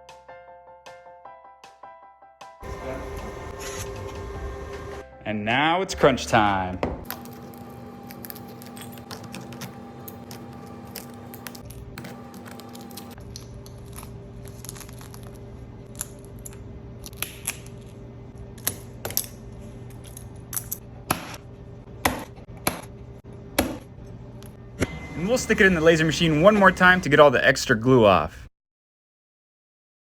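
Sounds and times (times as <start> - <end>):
steady hum: 2.6 - 5.0, 7.0 - 13.3.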